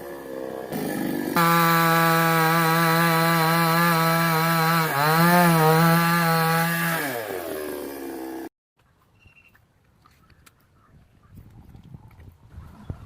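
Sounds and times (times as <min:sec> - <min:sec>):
chainsaw running at high revs: 0:00.0 - 0:08.5.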